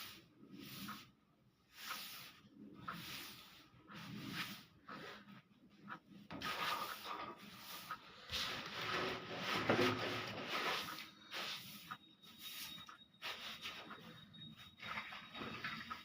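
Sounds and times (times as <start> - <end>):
broom sweeping a floor: 0.0 - 16.0.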